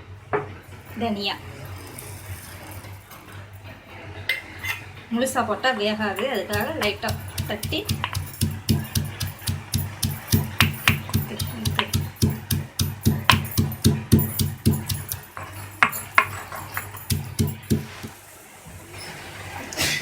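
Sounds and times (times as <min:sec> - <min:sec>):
seeds being pounded: 0:06.5 - 0:18.1.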